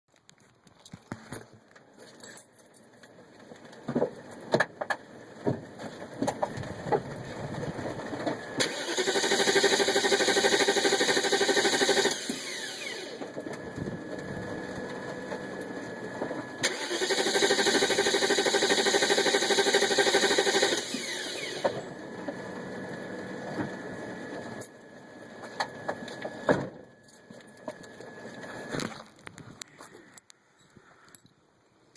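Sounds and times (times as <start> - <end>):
starter cranking engine: 8.6 - 13.3, 16.6 - 21.9.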